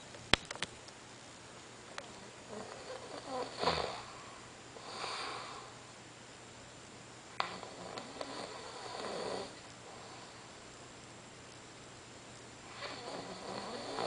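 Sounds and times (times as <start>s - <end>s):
sharp click: 0.3s - 1.0s
person snoring: 2.1s - 5.8s, 7.4s - 10.5s, 12.7s - 14.0s.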